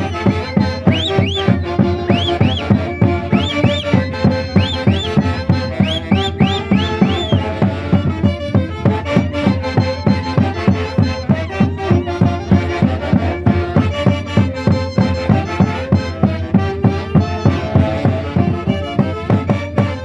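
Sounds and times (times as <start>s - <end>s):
festival band music: 0.0s - 20.0s
swooping high notes: 0.8s - 7.5s.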